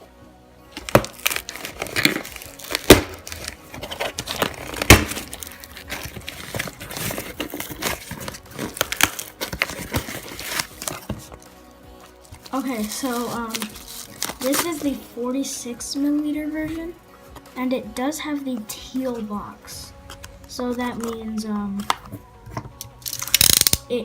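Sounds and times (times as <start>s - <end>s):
packaging crinkling and rustling: 0.7s - 15.1s, 20.0s - 23.8s.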